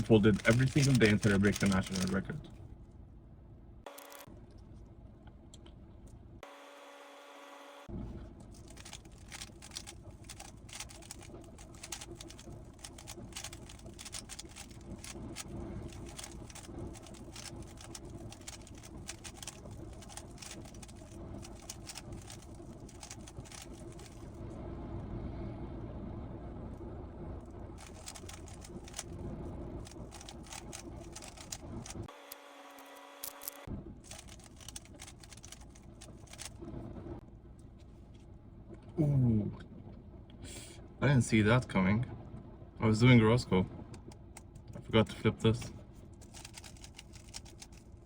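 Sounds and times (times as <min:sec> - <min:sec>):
low background rumble and hum: 0:00.0 - 0:48.0
plastic puzzle cube clicking: 0:08.8 - 0:15.2, 0:27.8 - 0:29.1, 0:34.1 - 0:36.5.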